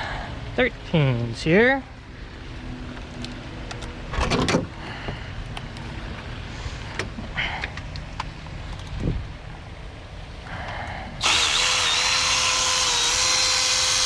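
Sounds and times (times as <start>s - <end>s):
small power tool whirring: 11.2s - 14.0s.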